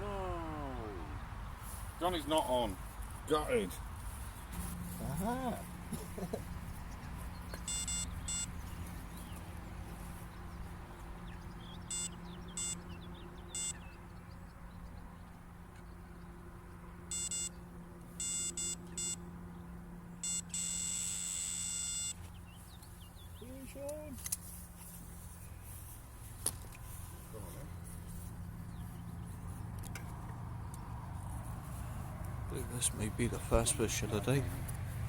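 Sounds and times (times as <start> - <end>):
bite alarm beeping: 7.6 - 8.6, 11.7 - 14.0, 17.1 - 19.3, 20.2 - 22.2.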